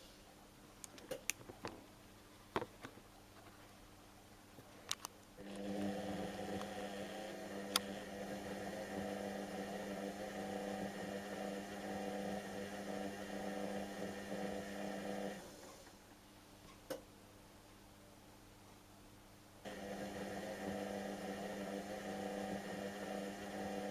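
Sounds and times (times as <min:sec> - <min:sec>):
washing machine motor hum: 0:05.4 - 0:15.8, 0:19.6 - 0:23.9.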